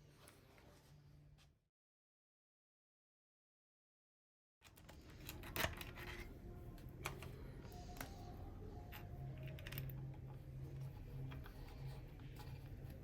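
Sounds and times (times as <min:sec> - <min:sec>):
low steady hum: 0:04.6 - 0:13.0.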